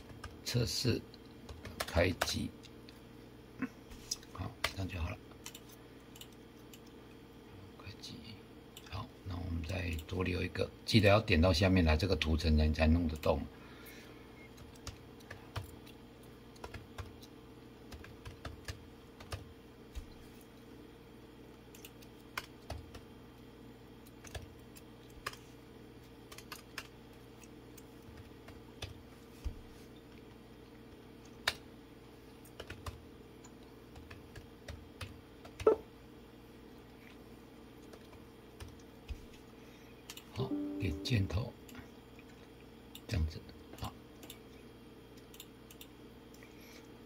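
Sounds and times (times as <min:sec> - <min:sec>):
computer keyboard typing: 0:00.0 - 0:00.5, 0:01.4 - 0:02.4, 0:05.4 - 0:06.9, 0:14.5 - 0:20.1, 0:21.7 - 0:23.1, 0:24.0 - 0:25.4, 0:26.3 - 0:29.0, 0:32.4 - 0:35.8, 0:37.8 - 0:39.2
low steady hum: 0:00.0 - 0:47.0.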